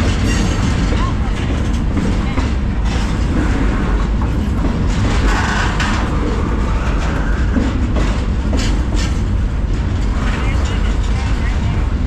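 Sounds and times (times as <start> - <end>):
sharp clanks: 0.0 - 6.4
freight train wheels rumbling: 0.0 - 12.0.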